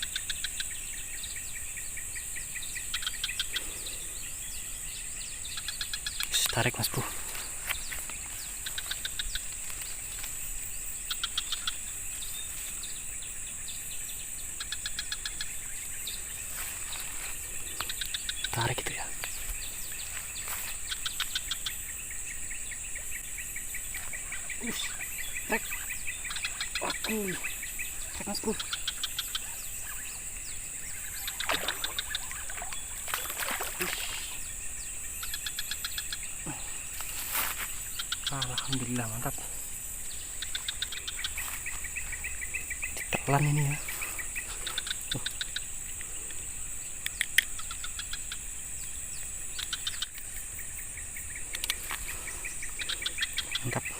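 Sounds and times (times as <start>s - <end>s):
high-pitched insect drone: 0.0s - 53.9s
rapid repeated chirps: 5.4s - 9.9s, 11.0s - 11.9s, 17.4s - 22.3s, 23.2s - 33.0s, 37.6s - 46.4s, 49.5s - 53.9s.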